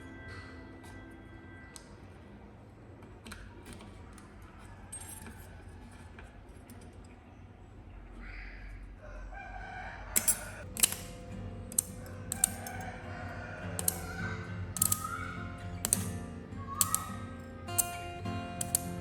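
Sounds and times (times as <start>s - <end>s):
sharp clicks: 10.2s - 19.0s
light clicks and taps: 13.7s - 18.0s.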